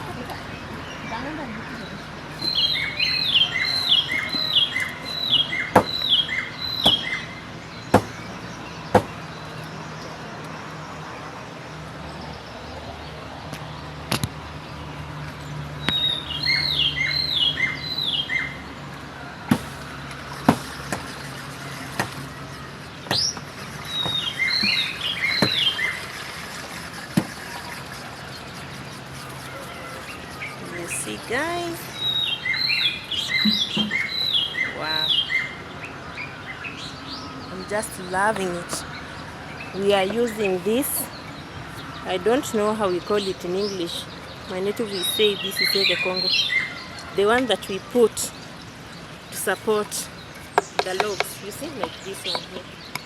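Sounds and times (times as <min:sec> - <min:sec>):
bird chirping down-slurred notes: 0:00.0 - 0:10.5, 0:29.1 - 0:48.4
sharp knocks: 0:05.7 - 0:06.0, 0:06.8 - 0:07.1, 0:07.9 - 0:08.2, 0:08.9 - 0:09.2, 0:19.5 - 0:19.8.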